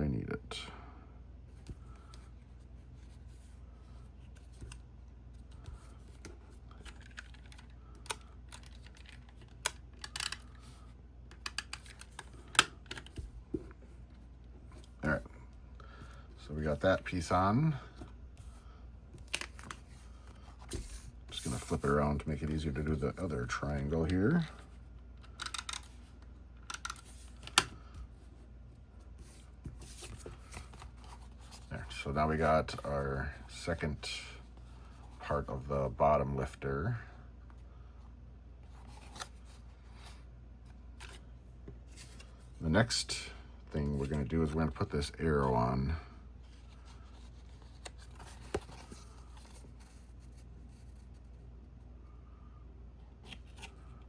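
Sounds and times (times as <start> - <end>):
low steady hum: 0.0 - 54.0
paper rustling: 29.2 - 31.8
cardstock rustling: 29.2 - 32.0, 46.6 - 51.0.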